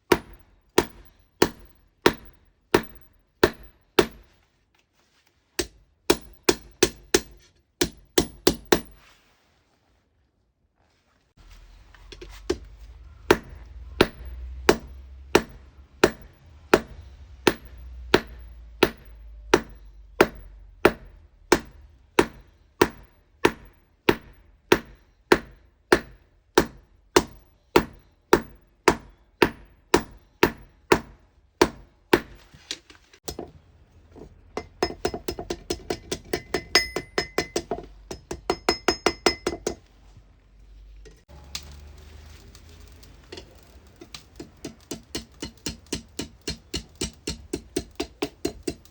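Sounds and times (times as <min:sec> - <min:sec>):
light hammer taps on ringing anvil: 0:36.4 - 0:39.8.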